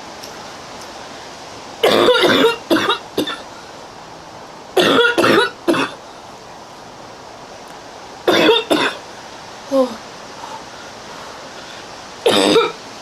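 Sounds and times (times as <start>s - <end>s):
background hiss: 0.0s - 13.0s
woman coughing: 4.8s - 6.0s, 8.3s - 9.0s, 12.3s - 12.8s.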